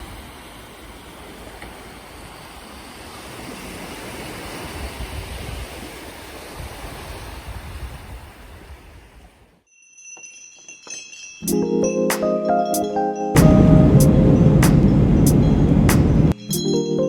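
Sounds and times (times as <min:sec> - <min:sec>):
waves rushing: 0:00.0 - 0:09.3, 0:12.1 - 0:16.4
wind gusts on microphone: 0:00.0 - 0:09.6, 0:13.4 - 0:16.4.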